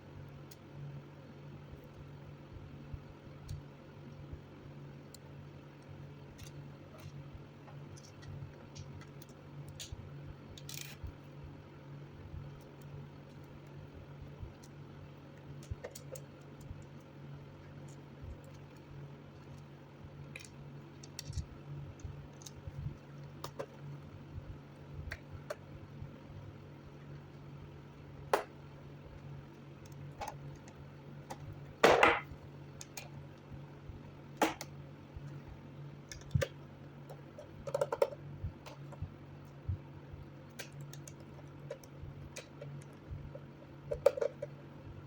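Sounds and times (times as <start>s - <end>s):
steady low hum: 0.0s - 45.0s
clicks and taps on laptop: 36.1s - 39.0s.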